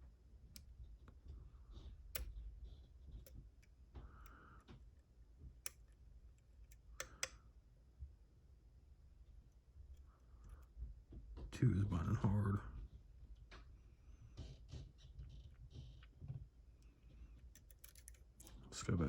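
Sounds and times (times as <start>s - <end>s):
lock pick metallic clicks: 5.6s - 7.4s, 17.5s - 18.5s.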